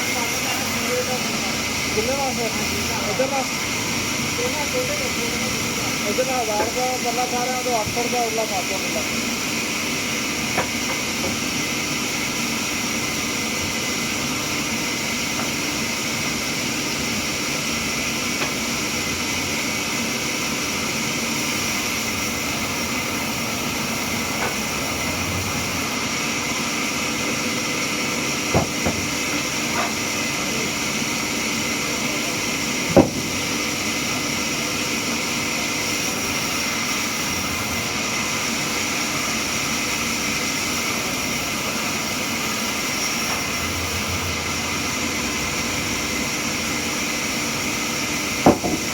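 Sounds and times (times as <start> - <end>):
sawmill machinery drone and whine: 0.0 - 48.9
sharp knocks: 28.5 - 29.1, 32.9 - 33.4, 48.4 - 48.9.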